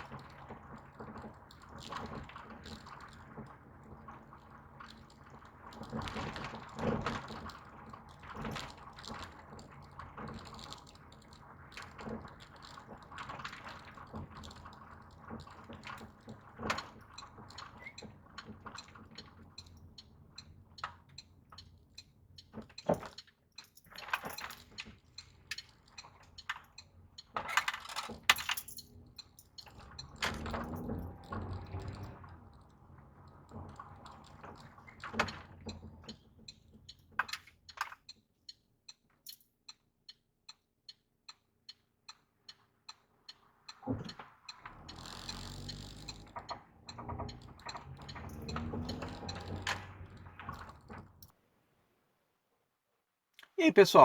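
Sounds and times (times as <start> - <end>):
car driving over rough ground: 44.6 - 51.2.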